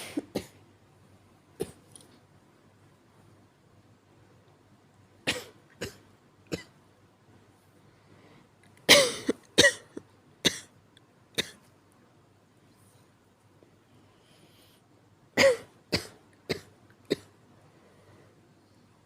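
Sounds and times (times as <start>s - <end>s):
person coughing: 0.0s - 0.6s, 5.3s - 6.7s, 8.9s - 10.7s, 15.4s - 17.3s.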